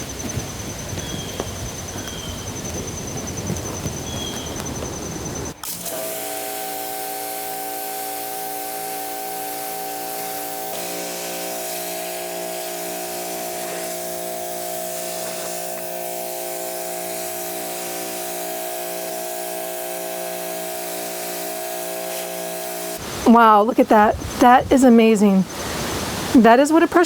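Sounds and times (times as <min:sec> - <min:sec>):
pressure washer motor hum: 0:05.4 - 0:24.5
high-pressure water jet hiss: 0:05.6 - 0:27.0.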